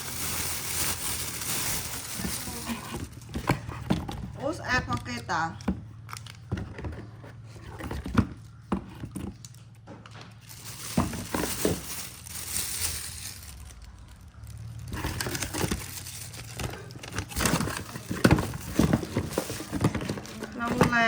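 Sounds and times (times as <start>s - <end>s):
packaging crinkling: 0.0s - 3.9s, 10.4s - 21.0s.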